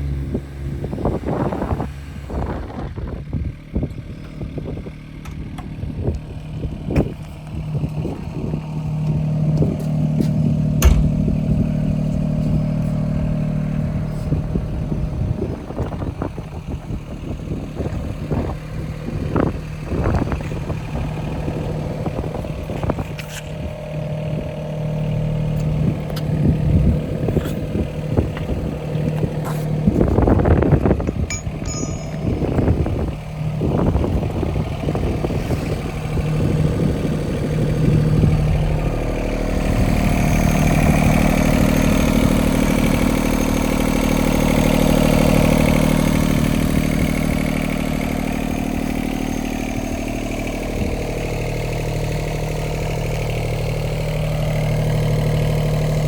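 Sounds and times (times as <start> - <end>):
diesel engine running: 0.0 - 56.0
machine clanks and knocks: 31.3 - 33.0.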